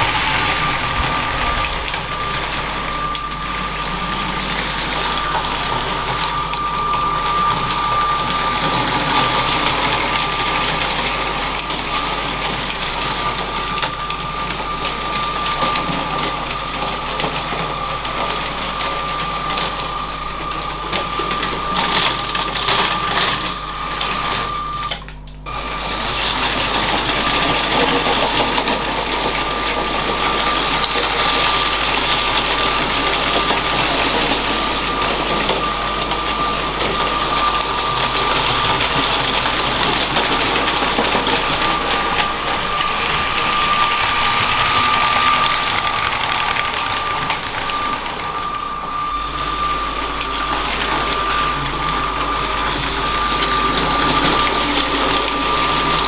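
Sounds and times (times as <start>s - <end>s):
toy train motor whine: 0.0s - 56.0s
plastic wheels clattering on track: 25.7s - 56.0s.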